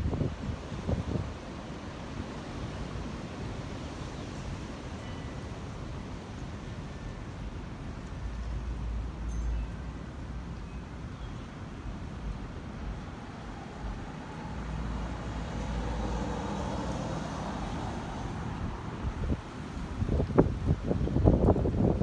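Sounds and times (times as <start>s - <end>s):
wind buffeting microphone: 0.0s - 2.0s, 11.9s - 22.0s
outdoor background noise: 0.0s - 22.0s
vehicle passing: 13.2s - 20.2s.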